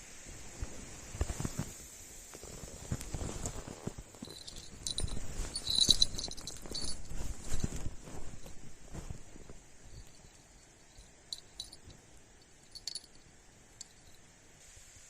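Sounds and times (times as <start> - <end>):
metallic clinking and jingling: 4.2 - 14.4.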